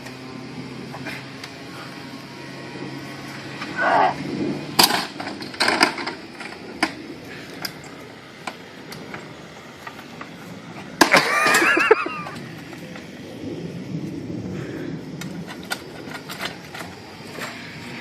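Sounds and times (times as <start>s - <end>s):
sharp cracks and knocks: 4.8s - 7.0s, 8.4s - 13.1s.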